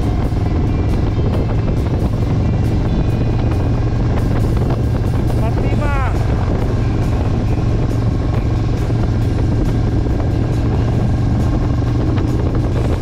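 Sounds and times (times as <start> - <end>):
motor vehicle droning: 0.0 - 13.0
road and wind noise: 0.0 - 13.0.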